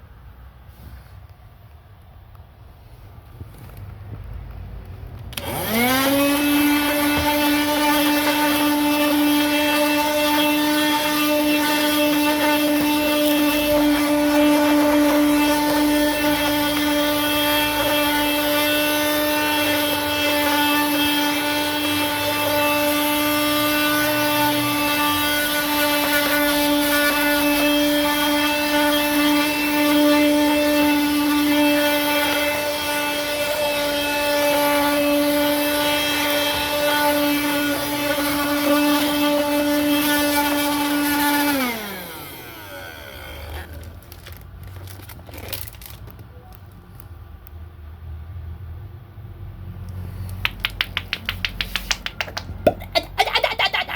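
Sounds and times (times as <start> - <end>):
motor spinning down: 5.3 - 10.4, 41.2 - 43.9
car vacuum cleaner motor whine: 5.3 - 44.1.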